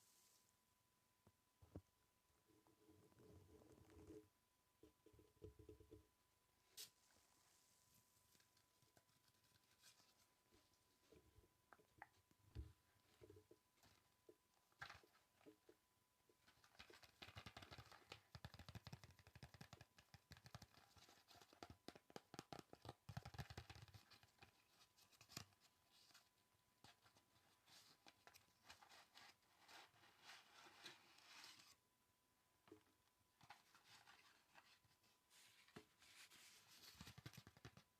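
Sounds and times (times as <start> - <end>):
light tapping and scratching: 33.4 - 37.9.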